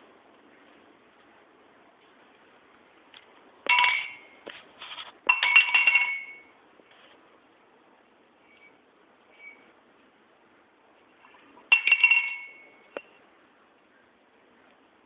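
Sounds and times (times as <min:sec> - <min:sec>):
glass tumbler clattering and ringing: 0:03.7 - 0:04.2, 0:05.3 - 0:06.5, 0:11.7 - 0:13.0.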